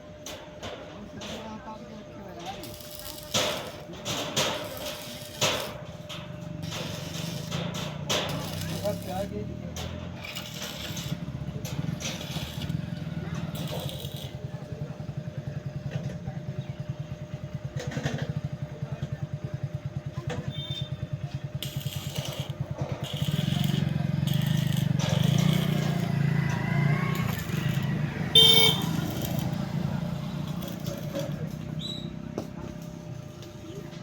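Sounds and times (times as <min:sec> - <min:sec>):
engine puttering: 0:05.6 - 0:33.8
horn toot: 0:28.2 - 0:29.4.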